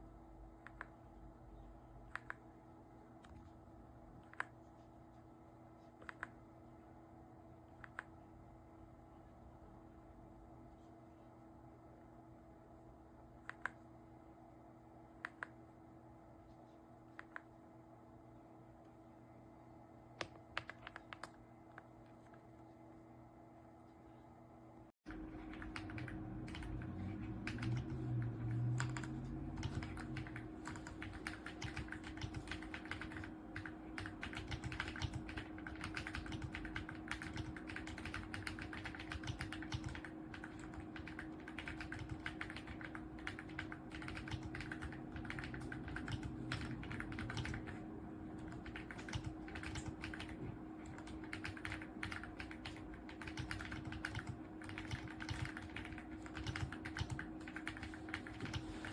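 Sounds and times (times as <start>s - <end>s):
mechanical keyboard typing: 20.2s - 21.4s, 25.1s - 58.9s.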